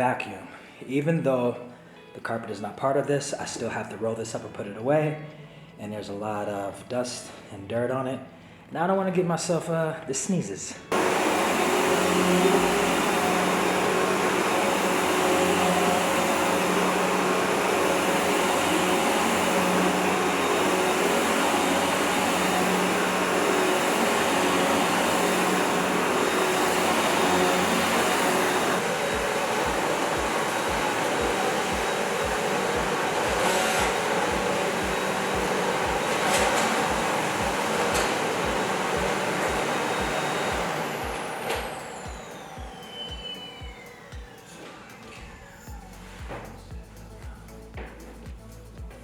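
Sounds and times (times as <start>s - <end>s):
vacuum cleaner running: 10.9s - 46.8s.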